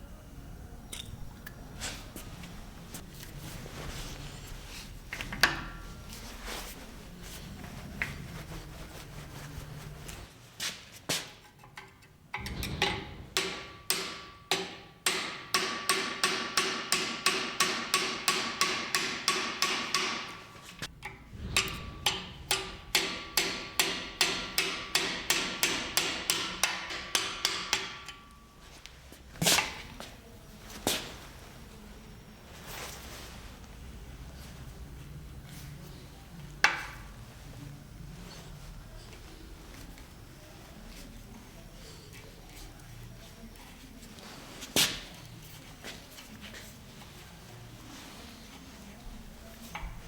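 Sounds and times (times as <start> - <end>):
hammer striking metal: 12.4 - 28.5.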